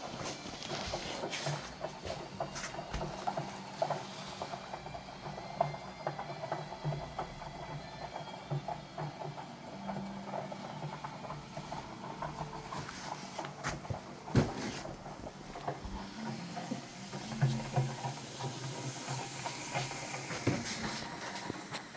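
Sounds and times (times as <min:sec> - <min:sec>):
low mechanical hum: 0:00.0 - 0:21.9.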